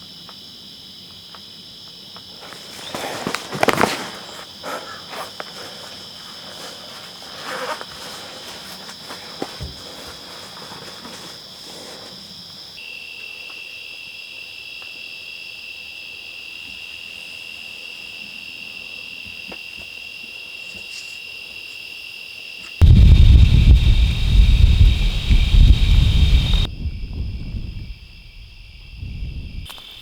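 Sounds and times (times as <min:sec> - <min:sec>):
crickets chirring: 0:00.0 - 0:30.0
loud low rumble: 0:22.8 - 0:26.9.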